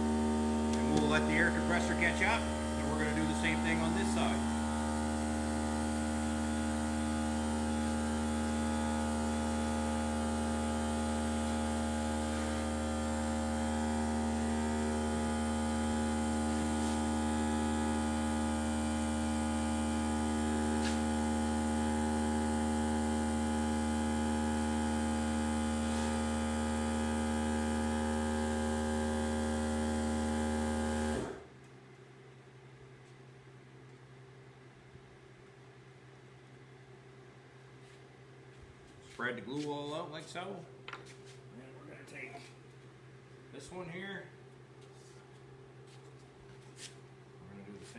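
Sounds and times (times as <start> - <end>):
air compressor running: 0.0 - 31.5.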